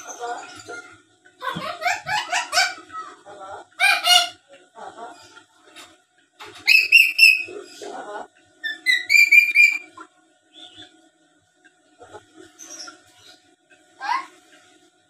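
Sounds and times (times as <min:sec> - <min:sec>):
parrot high whistled notes: 0:06.6 - 0:07.5, 0:08.6 - 0:10.0.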